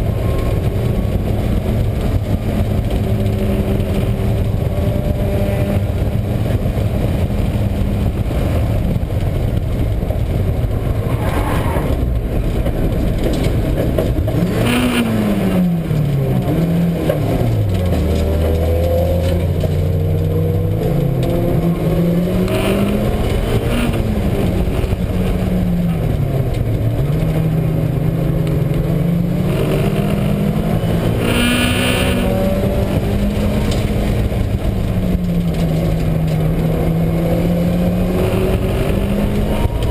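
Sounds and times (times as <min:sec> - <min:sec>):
car engine revving: 0:00.0 - 0:39.9
low wheel drone: 0:00.0 - 0:39.9.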